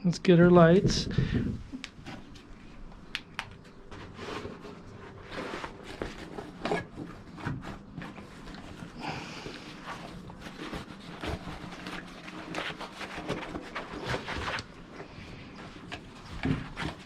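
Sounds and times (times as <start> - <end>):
rustling on wooden platform: 3.7 - 17.0.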